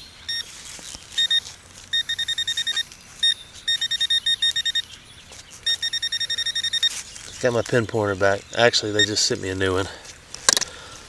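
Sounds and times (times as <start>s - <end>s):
pinpointer electronic beeps: 0.0s - 0.5s, 1.2s - 5.0s, 5.6s - 7.0s, 9.0s - 9.2s.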